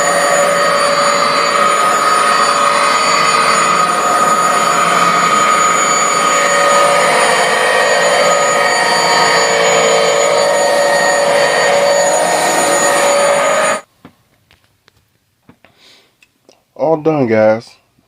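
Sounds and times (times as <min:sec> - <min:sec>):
carpet washer motor drone: 0:00.0 - 0:13.9.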